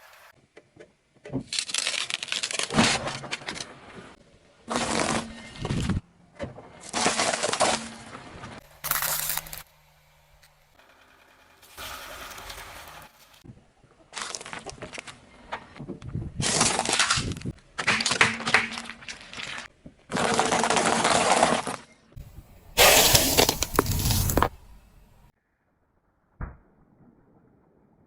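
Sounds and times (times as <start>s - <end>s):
car tyres crushing crunchy objects: 6.7s - 9.7s, 16.4s - 24.9s.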